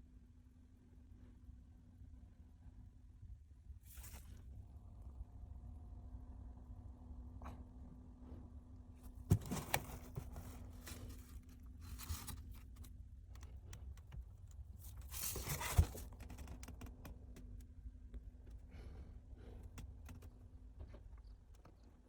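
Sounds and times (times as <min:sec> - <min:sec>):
steady low hum: 0:00.0 - 0:22.0
scraping and rustling: 0:09.1 - 0:17.1.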